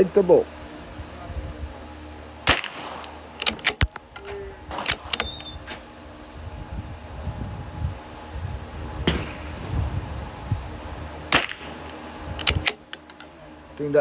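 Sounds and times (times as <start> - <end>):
wind rumble on microphone: 0.0 - 1.9, 3.8 - 12.8
rifle shots cracking: 2.4 - 4.0, 4.7 - 5.9, 9.1 - 9.6, 11.3 - 12.8.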